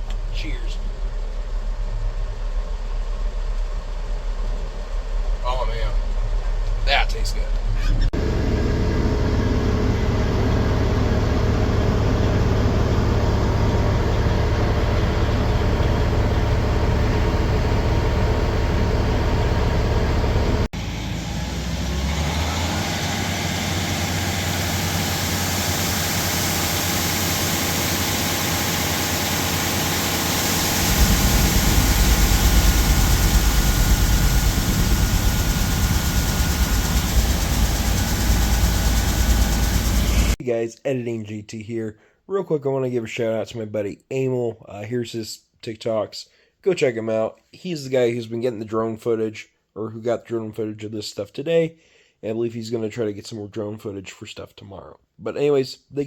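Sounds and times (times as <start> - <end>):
heavy engine running: 0.0 - 40.4
machine whine: 7.5 - 40.4.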